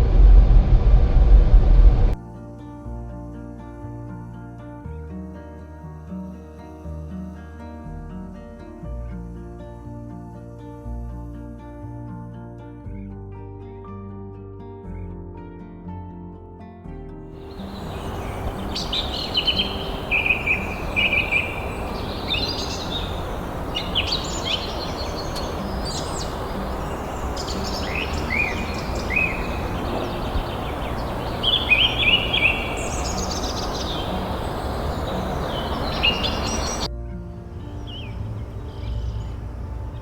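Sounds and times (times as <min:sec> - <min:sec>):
background hiss: 0:17.4 - 0:40.0
songbirds chirping: 0:17.4 - 0:40.0.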